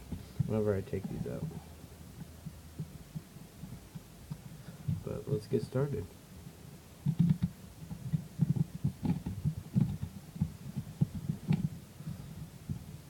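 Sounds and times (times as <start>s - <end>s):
dull knocks and rubbing: 7.0s - 12.9s.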